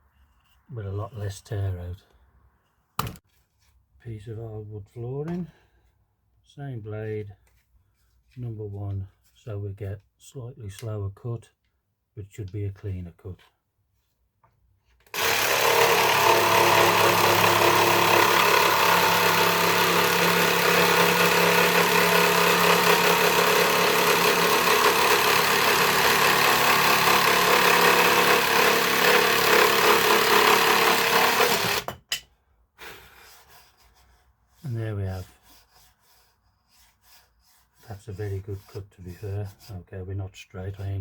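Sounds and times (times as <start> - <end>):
jigsaw sawing through wood: 15.1 - 32.0.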